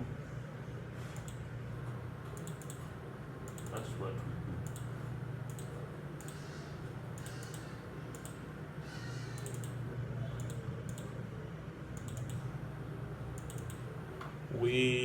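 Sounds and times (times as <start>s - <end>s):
steady low hum: 0.0s - 15.0s
keyboard and mouse clicks: 1.2s - 1.4s, 2.4s - 2.8s, 3.5s - 3.9s, 4.6s - 4.9s, 5.5s - 6.4s, 7.2s - 8.4s, 9.4s - 9.8s, 10.4s - 11.1s, 12.0s - 12.4s, 13.4s - 13.8s.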